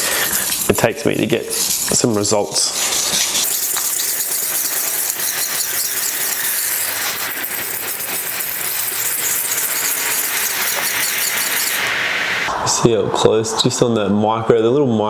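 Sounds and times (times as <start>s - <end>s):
knife scraping on whetstone: 0.0s - 11.9s.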